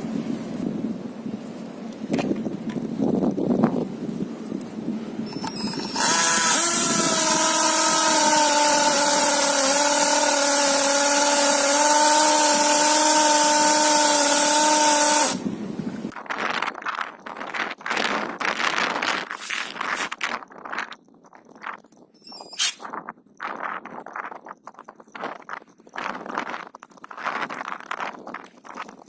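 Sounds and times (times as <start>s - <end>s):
hammer drill motor running: 5.3s - 15.4s.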